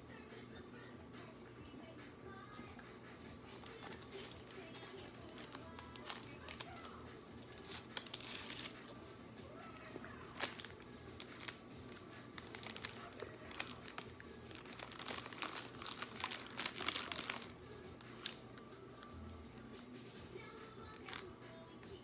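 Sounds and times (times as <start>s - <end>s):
food packaging crinkling: 3.5s - 19.1s, 20.8s - 21.3s.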